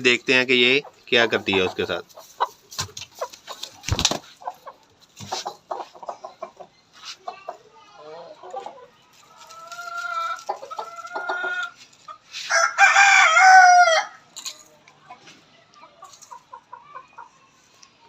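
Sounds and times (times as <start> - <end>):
chickens clucking: 0.0 - 18.0
rooster crowing: 12.5 - 14.2.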